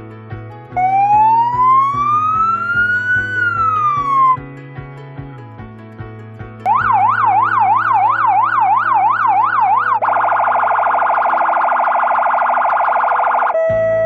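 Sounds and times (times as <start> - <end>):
background music: 0.0 - 12.3, 13.1 - 14.0
police siren yelp: 0.8 - 4.4, 6.7 - 14.0.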